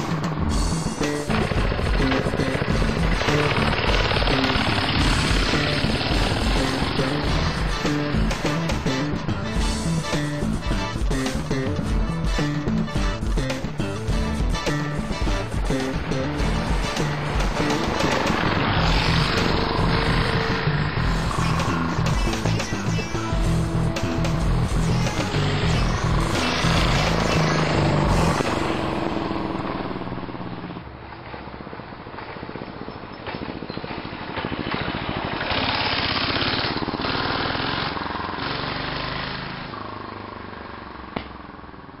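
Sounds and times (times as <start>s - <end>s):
small engine running: 0.0s - 12.6s, 14.6s - 42.0s
music with repeating bass line: 0.2s - 28.6s.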